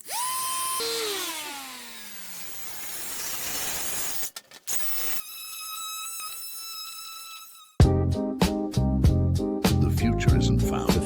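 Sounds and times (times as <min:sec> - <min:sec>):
power tool motor spinning down: 0:00.0 - 0:07.7.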